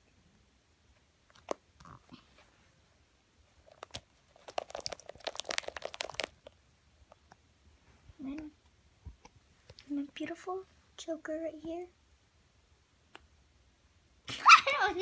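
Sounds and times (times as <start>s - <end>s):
slime crackling pops: 3.7s - 6.6s.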